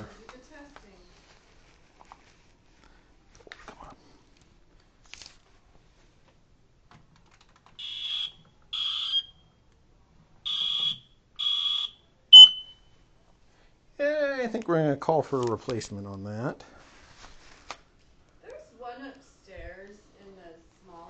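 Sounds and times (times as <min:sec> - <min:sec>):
smoke detector beeps: 0:07.8 - 0:09.4, 0:10.5 - 0:12.8
smoke detector chirp: 0:07.8 - 0:09.4, 0:10.5 - 0:12.9.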